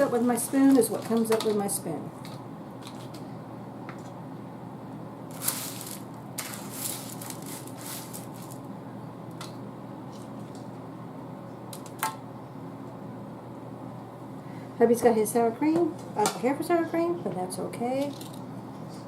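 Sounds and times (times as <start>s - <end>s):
tortilla chips crunching: 5.3s - 8.7s.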